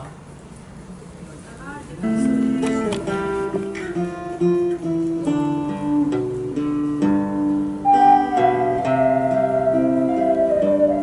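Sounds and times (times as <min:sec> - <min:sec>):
strummed acoustic guitar: 0:02.1 - 0:11.0
ocarinas playing a melody: 0:07.8 - 0:11.0.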